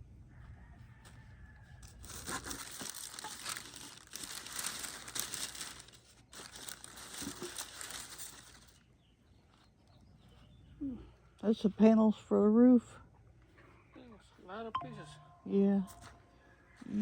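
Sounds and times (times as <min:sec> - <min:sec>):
packing material crinkling: 0:01.8 - 0:08.8.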